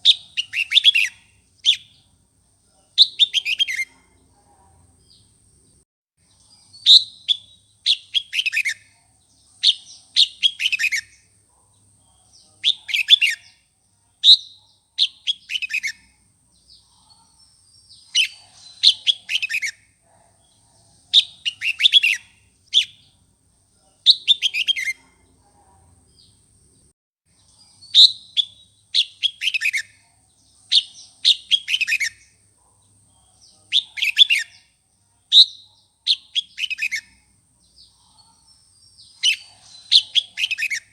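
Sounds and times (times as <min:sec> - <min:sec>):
bulbul singing whistled notes: 0:00.0 - 0:02.0, 0:03.0 - 0:03.9, 0:06.7 - 0:08.9, 0:21.2 - 0:23.1, 0:24.0 - 0:25.0, 0:27.6 - 0:30.0, 0:30.7 - 0:32.4, 0:33.7 - 0:34.7, 0:35.3 - 0:37.2, 0:38.9 - 0:40.9.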